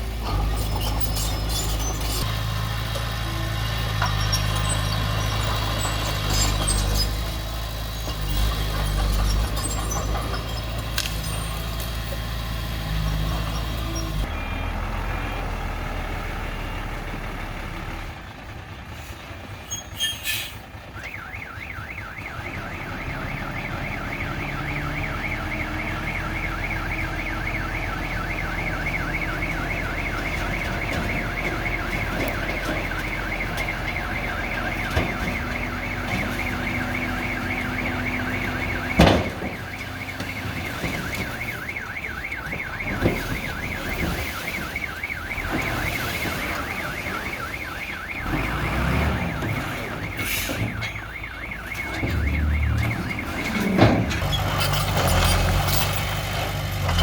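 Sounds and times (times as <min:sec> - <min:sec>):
diesel engine running: 0:00.0 - 0:21.0
warbling reversing alarm: 0:21.0 - 0:54.2.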